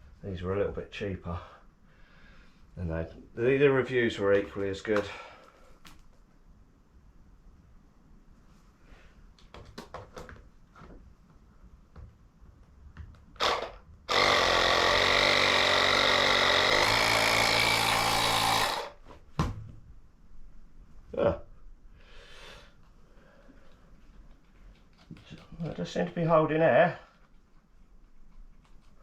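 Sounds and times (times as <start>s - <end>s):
electric air compressor running: 13.4s - 19.0s.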